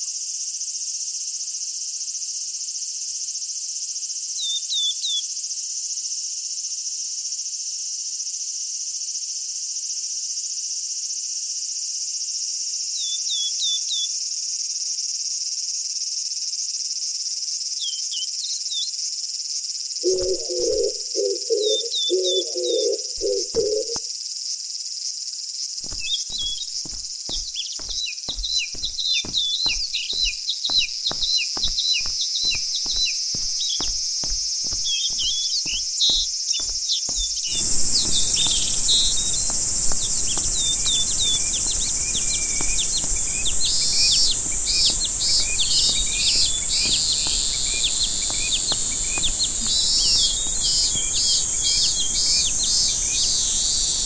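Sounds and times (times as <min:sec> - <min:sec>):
pulsing high calls: 0:20.0 - 0:24.0, 0:34.7 - 0:54.0
high insect buzz: 0:20.0 - 0:24.1, 0:25.8 - 0:54.0
small birds chirping: 0:20.0 - 0:24.1, 0:25.8 - 0:54.0.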